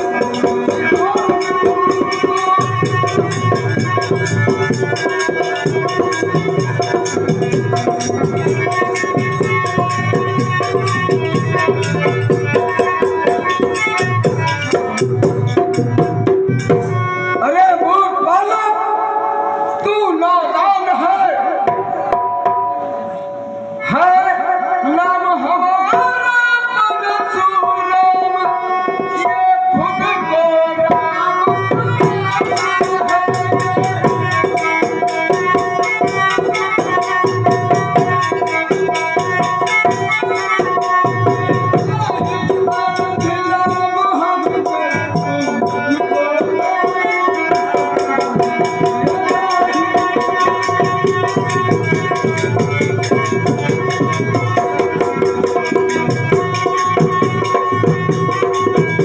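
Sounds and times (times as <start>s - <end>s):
fast hand-drum beat: 0.0s - 17.3s, 29.8s - 59.0s.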